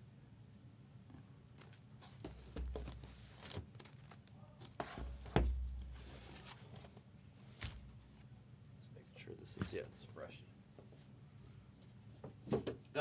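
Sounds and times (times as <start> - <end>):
card boxes tapping and clicking: 2.0 - 3.6.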